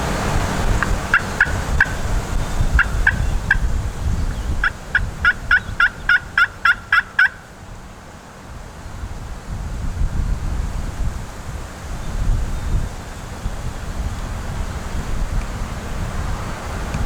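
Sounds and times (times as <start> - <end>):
wind noise on microphone: 0.0 - 7.9, 8.5 - 17.0
wild turkey yelping: 0.8 - 7.5.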